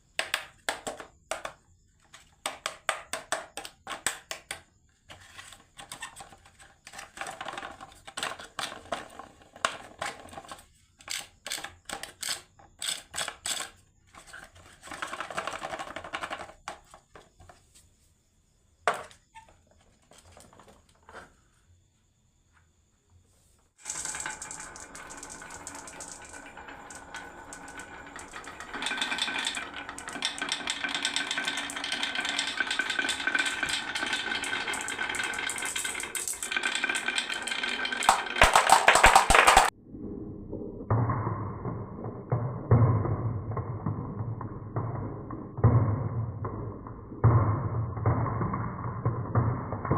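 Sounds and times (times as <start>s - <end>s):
marbles clicking down wooden run: 5.8s - 16.9s, 23.8s - 39.8s, 40.9s - 49.9s
dense rattling clatter: 23.8s - 39.7s.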